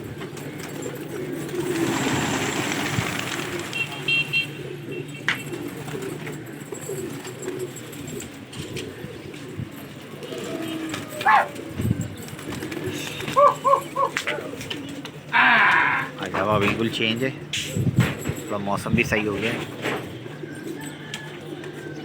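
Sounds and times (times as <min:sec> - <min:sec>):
pigeons cooing: 0:00.0 - 0:22.0.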